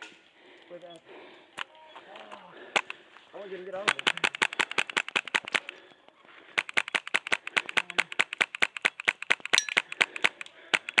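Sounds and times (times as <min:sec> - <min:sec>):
airsoft guns firing: 0:03.8 - 0:05.8, 0:06.5 - 0:11.0.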